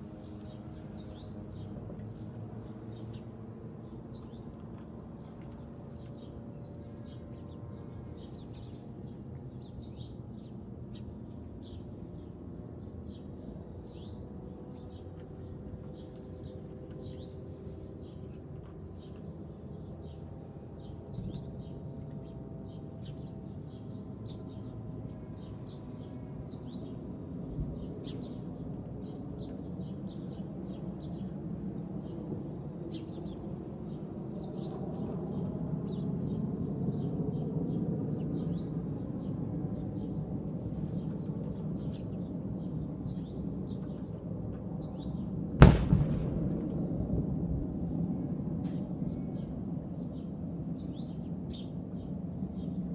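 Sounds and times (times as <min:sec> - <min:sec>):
small birds chirping: 0:00.0 - 0:45.4, 0:49.0 - 0:52.9
low hum: 0:45.3 - 0:50.7.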